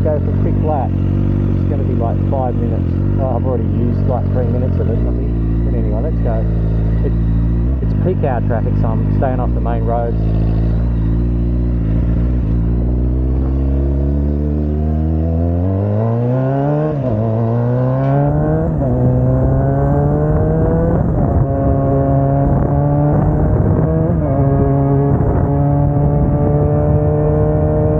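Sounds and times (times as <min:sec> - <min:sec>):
motorcycle engine accelerating: 0:00.0 - 0:27.9
wind noise on microphone: 0:18.1 - 0:27.9.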